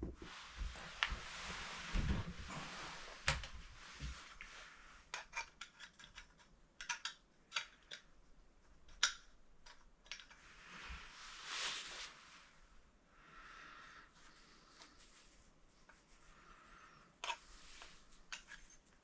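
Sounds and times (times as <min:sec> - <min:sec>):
rustling scrape: 0:00.2 - 0:05.1, 0:10.4 - 0:12.7, 0:14.2 - 0:19.0.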